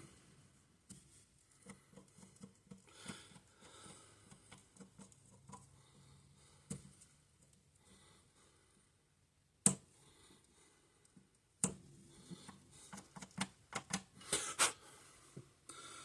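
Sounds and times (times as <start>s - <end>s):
hand tools clicking and tapping: 11.1s - 14.1s.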